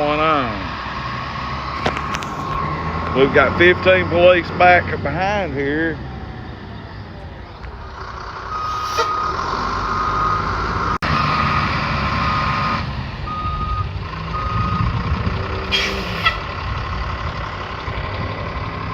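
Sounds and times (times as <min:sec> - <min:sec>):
truck engine running: 0:00.0 - 0:18.9
truck reversing alarm beeping: 0:05.8 - 0:16.6
short hiss: 0:08.6 - 0:09.1.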